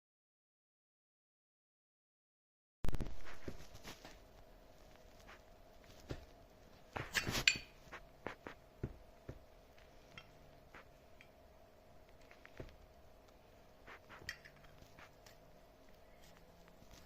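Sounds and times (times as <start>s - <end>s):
faint steady hum: 2.9s - 17.0s.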